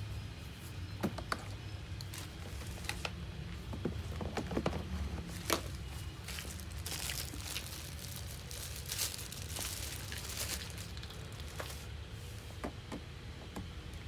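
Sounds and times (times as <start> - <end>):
packaging crinkling: 2.0 - 3.1, 4.5 - 11.9.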